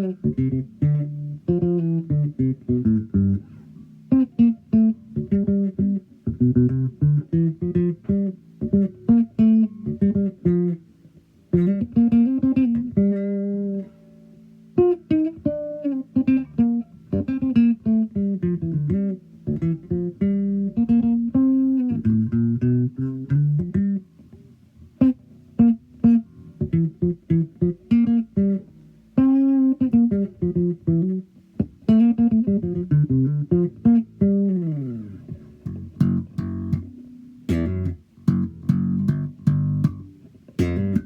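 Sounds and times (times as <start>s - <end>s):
electric bass plucked notes: 0.0s - 41.0s.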